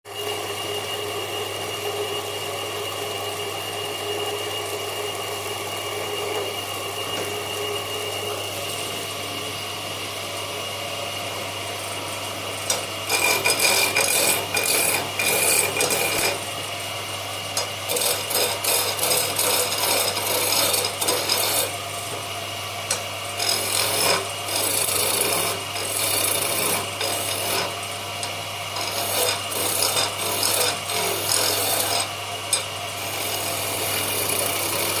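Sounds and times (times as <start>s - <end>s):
steady machine hum: 0.1s - 35.0s
scraping on wood: 17.9s - 21.7s, 28.8s - 32.1s.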